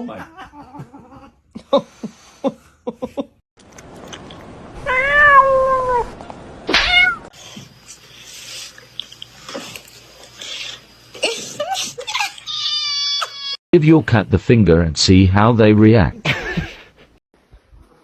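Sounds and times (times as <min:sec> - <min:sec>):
cat meowing: 0:04.8 - 0:06.1, 0:06.7 - 0:07.3.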